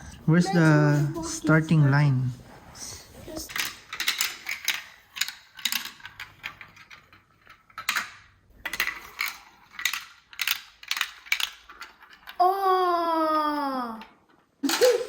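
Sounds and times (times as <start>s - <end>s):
marbles clattering on plastic track: 3.3s - 12.4s.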